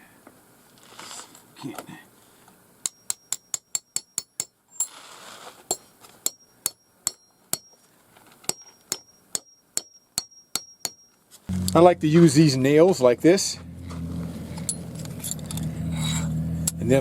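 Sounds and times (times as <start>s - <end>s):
hammer striking metal nails: 2.8s - 4.6s, 5.7s - 7.8s, 8.4s - 11.2s.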